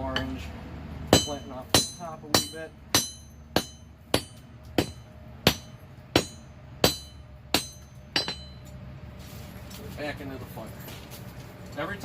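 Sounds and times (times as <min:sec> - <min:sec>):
hammer striking hot metal: 0:01.1 - 0:08.7.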